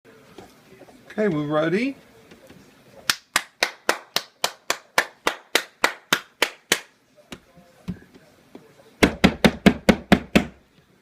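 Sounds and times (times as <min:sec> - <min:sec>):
person clapping hands: 0:03.1 - 0:06.9.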